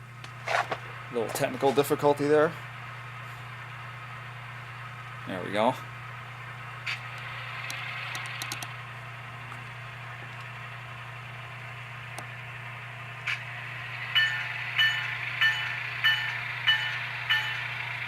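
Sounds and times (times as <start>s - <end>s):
diesel engine idle hum: 0.0s - 18.0s
locomotive bell ringing: 14.1s - 18.0s.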